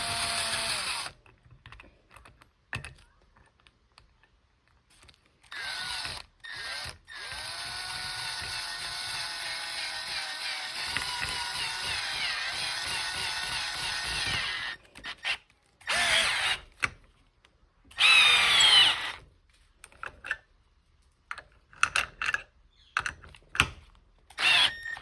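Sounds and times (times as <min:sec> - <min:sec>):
screwdriver driving screw into wood: 0:05.5 - 0:17.0, 0:18.0 - 0:19.2, 0:23.0 - 0:25.0.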